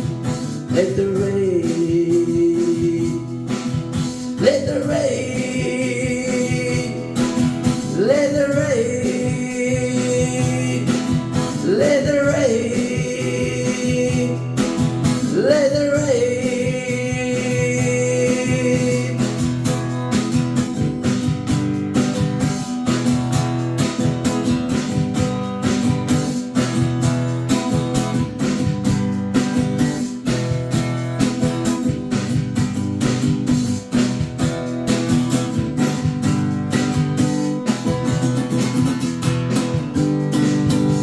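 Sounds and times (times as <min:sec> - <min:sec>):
acoustic guitar strumming: 0:00.0 - 0:41.0.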